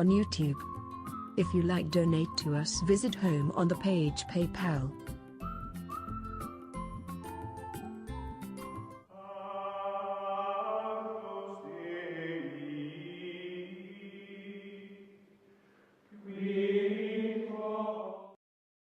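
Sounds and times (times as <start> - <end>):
slow chant-like voice music: 9.1 - 15.3, 16.1 - 18.4.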